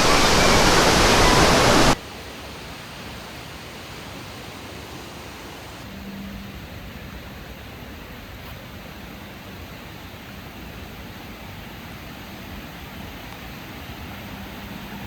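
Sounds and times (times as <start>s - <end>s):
loud rush of water: 0.0s - 5.9s
quiet steady hiss: 0.0s - 15.0s.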